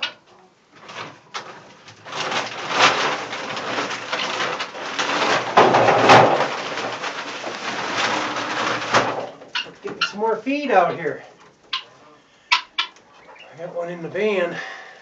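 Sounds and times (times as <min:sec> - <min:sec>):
rustling and scratching: 0:00.0 - 0:14.6
hens clucking softly: 0:08.1 - 0:13.9.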